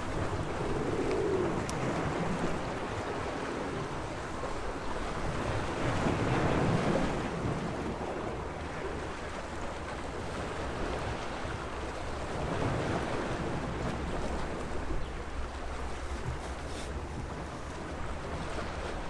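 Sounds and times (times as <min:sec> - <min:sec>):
small waves washing on shore: 0:00.0 - 0:19.0.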